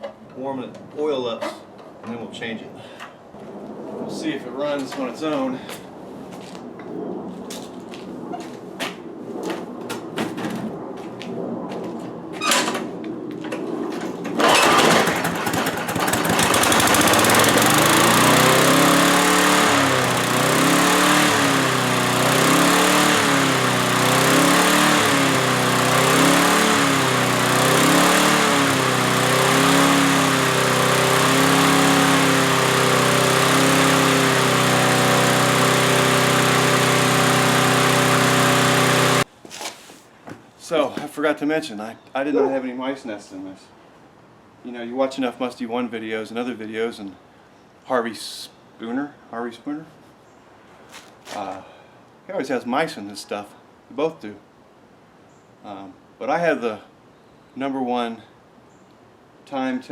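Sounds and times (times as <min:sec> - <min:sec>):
lawn mower engine running: 0:14.2 - 0:39.3
pull starter clicks: 0:14.3 - 0:18.5.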